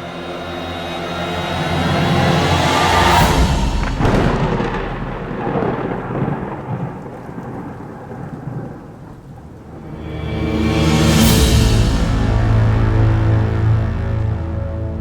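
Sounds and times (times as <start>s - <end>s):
thunder crack and rumble: 2.8s - 11.6s.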